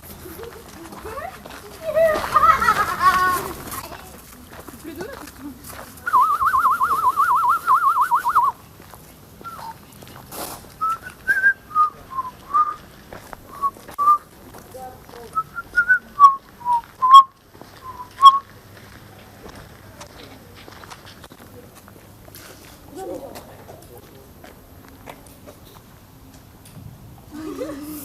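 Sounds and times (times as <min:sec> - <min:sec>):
person whistling: 0:06.1 - 0:08.6, 0:10.8 - 0:12.8, 0:13.5 - 0:14.2, 0:15.4 - 0:18.4.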